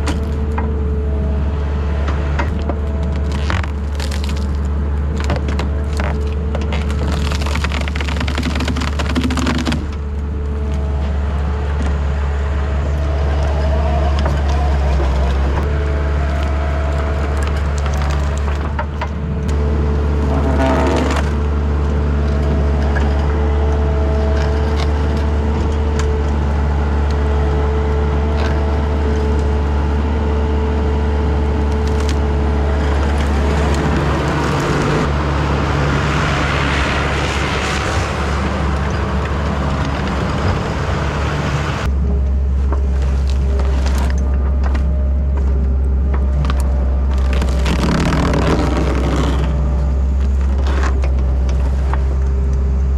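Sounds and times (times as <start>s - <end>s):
wood splitting cracks: 0.0s - 0.8s, 2.2s - 10.9s, 12.8s - 27.6s, 31.2s - 41.9s, 42.7s - 52.6s
diesel engine running under work: 0.0s - 52.9s
hydraulic tree shear: 0.0s - 52.9s.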